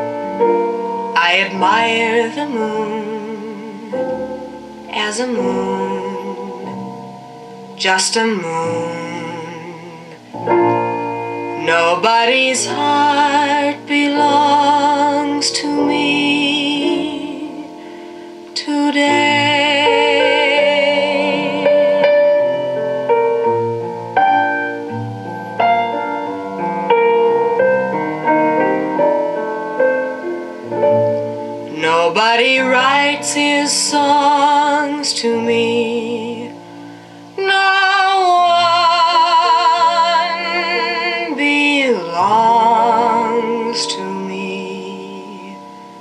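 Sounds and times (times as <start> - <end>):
person singing with vibrato: 0.0 - 26.6, 28.7 - 46.0
piano chords: 0.0 - 46.0
sustained accompaniment: 0.0 - 46.0.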